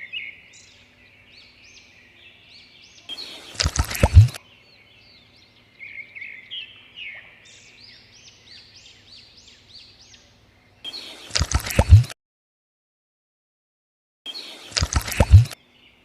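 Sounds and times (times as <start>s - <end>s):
songbirds singing and chirping: 0.0s - 12.1s, 14.3s - 16.0s
repeated short arched chirps: 3.2s - 4.4s, 10.9s - 12.2s, 14.5s - 15.6s.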